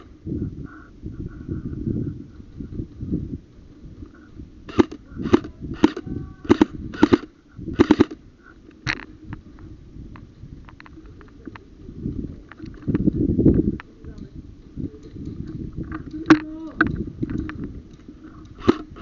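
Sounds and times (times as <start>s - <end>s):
airsoft gun shots: 4.7s - 8.2s, 18.6s - 19.0s
distant gunshots ticking: 4.7s - 8.2s.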